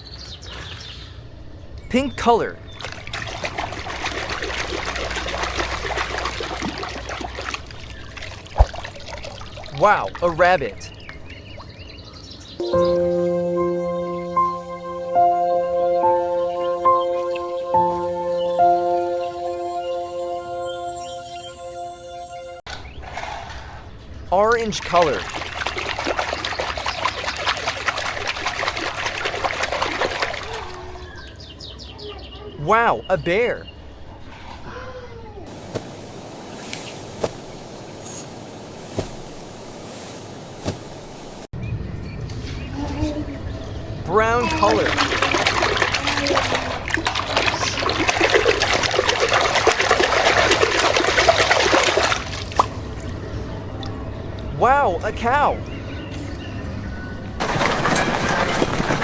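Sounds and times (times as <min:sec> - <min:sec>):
water running and splashing: 0:02.7 - 0:11.8, 0:24.6 - 0:31.0, 0:35.5 - 0:41.5, 0:44.4 - 0:53.2.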